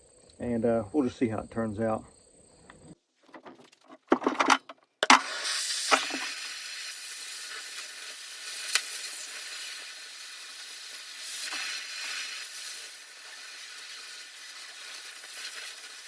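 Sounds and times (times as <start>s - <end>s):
clicks and knocks: 3.3s - 5.2s
cutting torch hissing: 5.1s - 16.0s.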